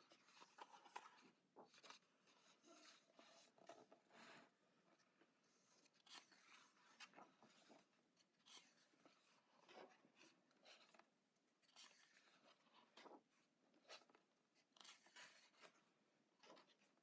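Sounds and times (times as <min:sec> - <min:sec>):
pages turning: 0:00.1 - 0:03.8, 0:14.8 - 0:15.8.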